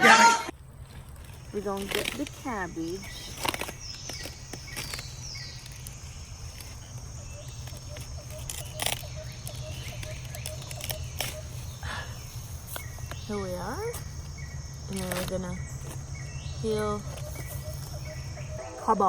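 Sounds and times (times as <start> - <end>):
faint high steady tone: 18.2 - 19.0.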